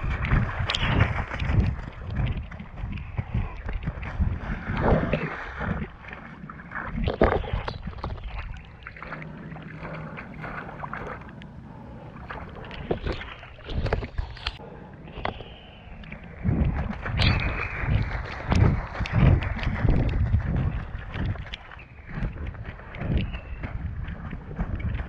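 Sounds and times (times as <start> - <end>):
skates rolling through mud: 0.0 - 9.3, 16.2 - 25.0
sloshing and scraping: 0.0 - 25.0.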